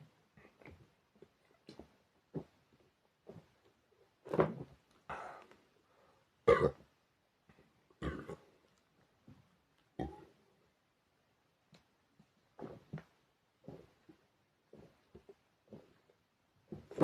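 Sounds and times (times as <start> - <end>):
person burping: 6.4 - 6.9, 8.0 - 8.5, 10.0 - 10.4.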